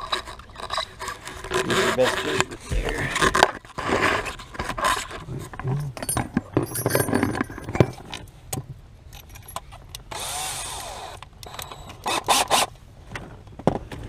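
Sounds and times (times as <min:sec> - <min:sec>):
tools clattering: 0:05.7 - 0:08.3
power drill whirring: 0:10.1 - 0:12.7.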